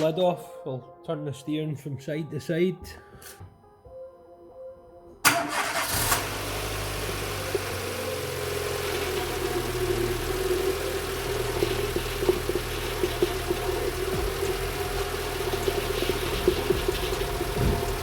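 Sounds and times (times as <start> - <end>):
car engine starting and idling: 5.2 - 18.0.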